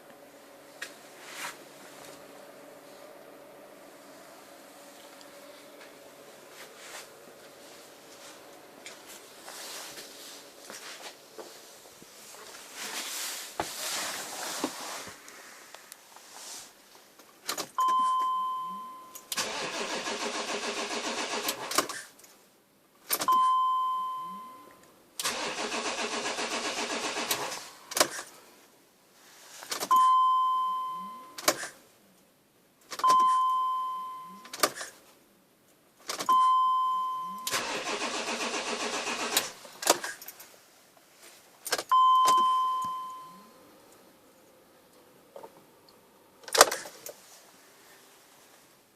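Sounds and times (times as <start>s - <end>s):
dashboard warning chime: 17.8s - 19.3s, 23.3s - 24.8s, 29.9s - 31.4s, 33.0s - 34.6s, 36.3s - 37.6s, 41.9s - 43.7s
engine cranking by starter: 19.3s - 22.1s, 25.2s - 28.3s, 37.5s - 40.2s.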